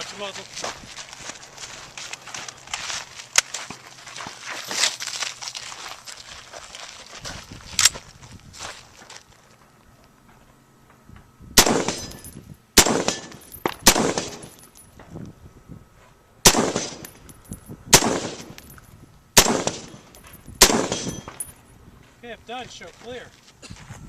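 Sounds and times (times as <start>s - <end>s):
rifle shots with echo: 11.6s - 14.6s, 16.4s - 17.2s, 17.9s - 18.6s, 19.4s - 21.4s
metallic ring of steel targets: 11.6s - 15.0s, 16.5s - 21.7s.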